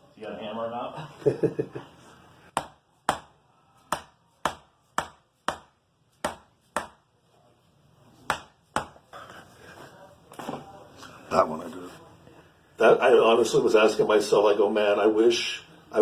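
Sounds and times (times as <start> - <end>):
hammer knocking on shoulder: 2.5 - 7.1, 8.3 - 9.1.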